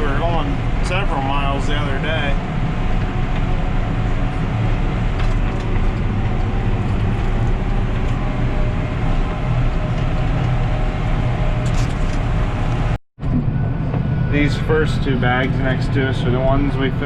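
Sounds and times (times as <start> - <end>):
tractor engine running: 0.0 - 17.0
tyre and road noise: 0.0 - 17.0.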